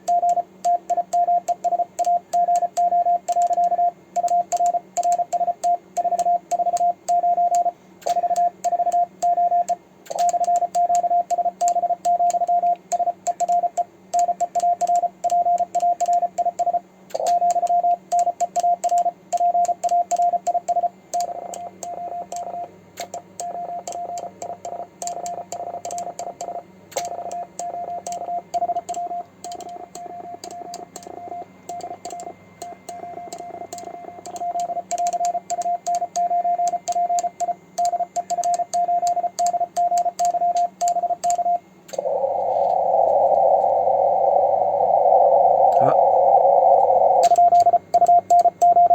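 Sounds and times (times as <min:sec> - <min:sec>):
sharp keying clicks: 0:28.0 - 0:42.0
morse code tone: 0:32.8 - 0:48.9.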